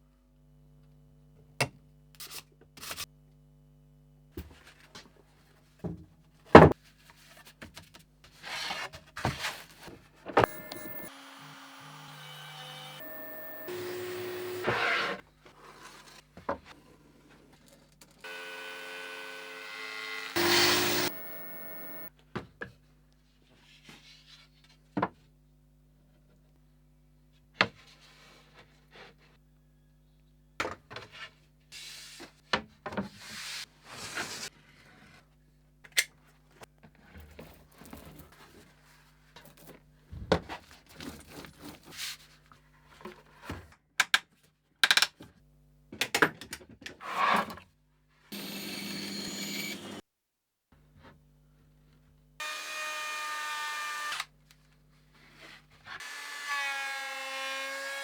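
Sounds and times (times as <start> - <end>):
low mains hum: 10.4 - 14.7, 20.4 - 22.1
wood scraping strokes: 20.4 - 22.1.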